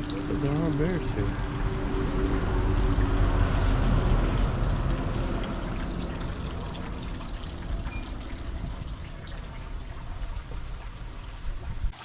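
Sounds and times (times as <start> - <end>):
water pouring and trickling: 0.0 - 12.0.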